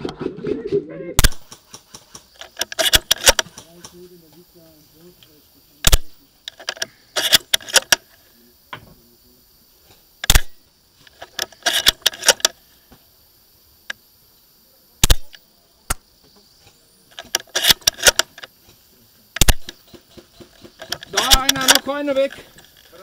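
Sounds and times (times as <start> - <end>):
airsoft rifle shots: 1.2 - 4.0, 5.8 - 6.2, 10.2 - 10.6, 15.0 - 16.0, 17.5 - 18.4, 19.4 - 19.8, 21.1 - 22.2
rifle bolt clattering: 2.4 - 3.5, 5.9 - 8.0, 11.2 - 12.6, 17.2 - 18.4.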